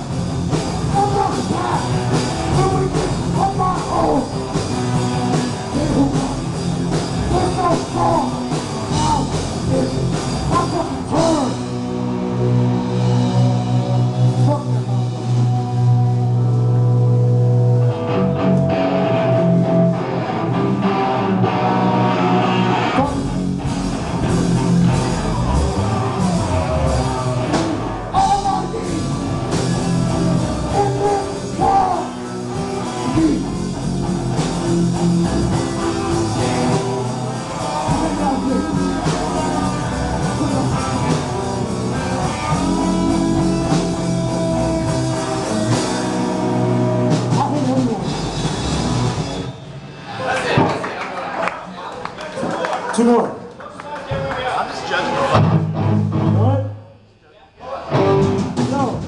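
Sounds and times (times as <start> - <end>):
electric guitar: 0.0 - 50.7, 55.2 - 56.5, 57.8 - 59.0
bass guitar: 0.0 - 50.8, 55.1 - 57.0, 57.6 - 59.0
drums: 0.0 - 51.1, 53.5 - 56.8, 57.7 - 59.0
shouted vocals: 0.8 - 4.4, 7.2 - 11.7, 25.1 - 33.6, 35.3 - 41.4, 57.6 - 58.3.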